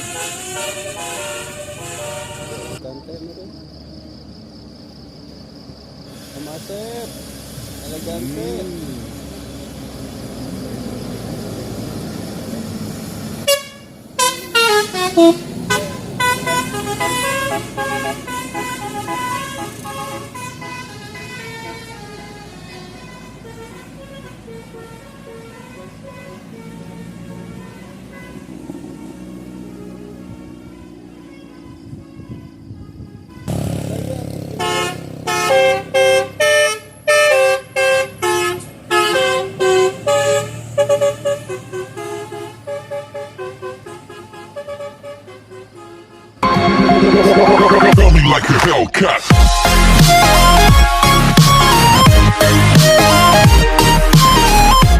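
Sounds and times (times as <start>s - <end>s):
bus horn playing a tune: 0.0s - 2.9s, 13.4s - 48.0s, 49.4s - 54.9s.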